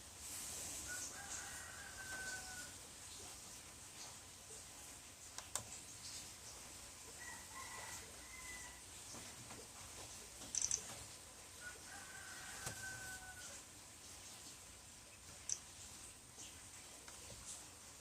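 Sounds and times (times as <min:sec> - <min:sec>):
distant rooster crowing: 0:00.8 - 0:02.8, 0:07.1 - 0:09.0, 0:11.6 - 0:13.7
computer mouse clicks: 0:10.4 - 0:11.0, 0:15.4 - 0:15.7.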